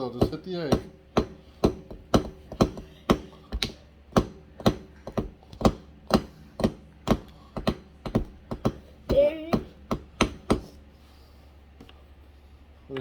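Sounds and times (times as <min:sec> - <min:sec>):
hammer striking egg: 0:00.0 - 0:10.8.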